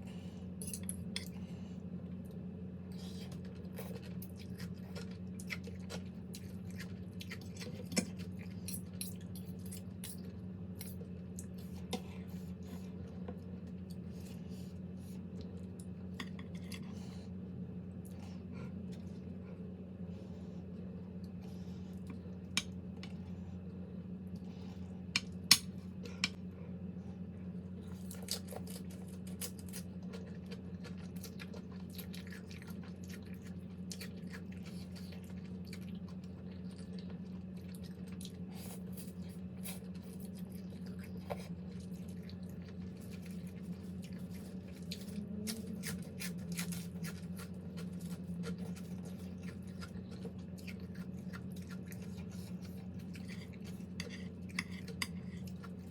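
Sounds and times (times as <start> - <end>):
steady low hum: 0.0 - 55.9
chewing: 3.0 - 17.0, 27.8 - 55.9.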